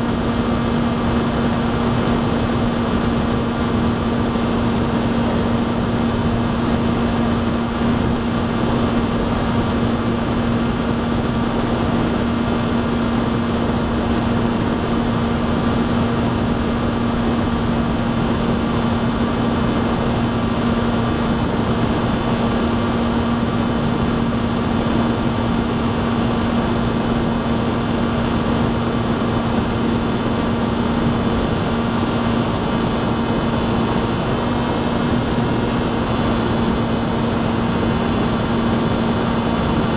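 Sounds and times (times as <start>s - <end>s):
electric motor and propeller hum: 0.0s - 39.9s
faint high beep: 3.4s - 19.0s, 19.7s - 21.0s, 21.6s - 24.9s, 25.6s - 26.8s, 27.4s - 28.8s, 29.4s - 32.6s, 33.3s - 34.6s, 35.3s - 36.6s, 37.2s - 38.5s, 39.1s - 39.9s.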